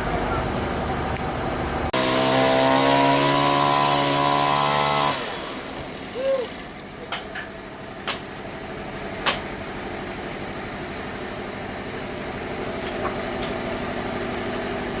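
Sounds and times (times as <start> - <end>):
sawmill machine humming: 0.0 - 15.0
sharp knocks: 9.2 - 9.5.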